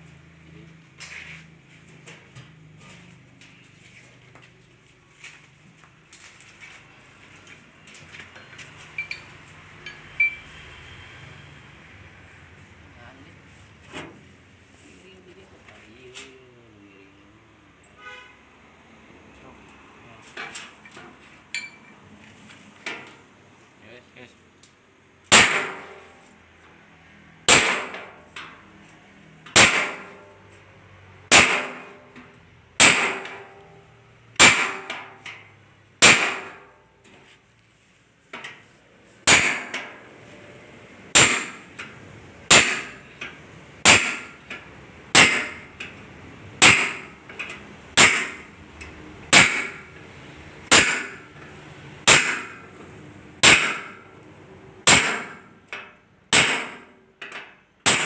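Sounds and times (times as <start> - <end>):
hammer clanging on sheet metal: 25.3 - 26.2, 27.5 - 28.6, 29.5 - 30.5, 31.3 - 36.8, 39.3 - 40.1, 41.1 - 46.0, 46.6 - 48.5, 49.3 - 50.0, 50.7 - 51.4, 52.0 - 52.8, 53.4 - 54.1, 54.8 - 58.0.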